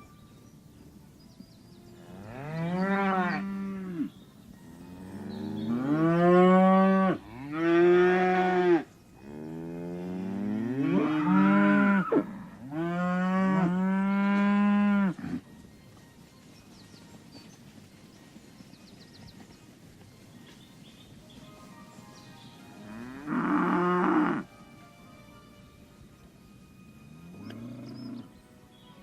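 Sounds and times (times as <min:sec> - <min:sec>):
cow mooing: 0:04.9 - 0:15.4, 0:22.9 - 0:24.5.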